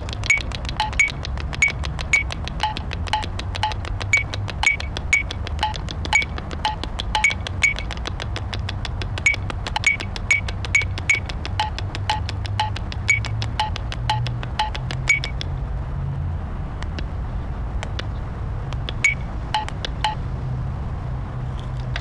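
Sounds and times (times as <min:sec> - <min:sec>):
rapid even clicking: 0:00.0 - 0:15.8, 0:16.8 - 0:20.3, 0:21.6 - 0:22.0
steady low rumble: 0:00.0 - 0:22.0.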